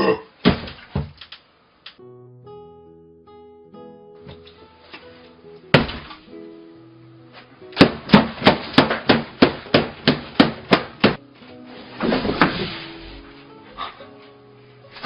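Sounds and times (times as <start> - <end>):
light background music: 2.0 - 15.0
sharp knocks: 7.8 - 11.2.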